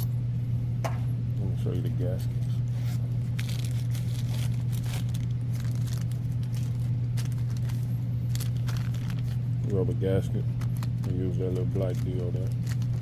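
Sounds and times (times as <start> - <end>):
steady low hum: 0.0 - 13.0
rubber gaskets and packaging rustling: 2.7 - 13.0.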